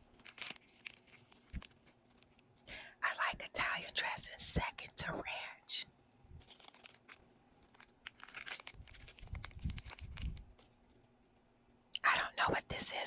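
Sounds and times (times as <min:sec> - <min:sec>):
plastic packaging crinkling and tearing: 0:00.0 - 0:02.5, 0:06.4 - 0:11.1.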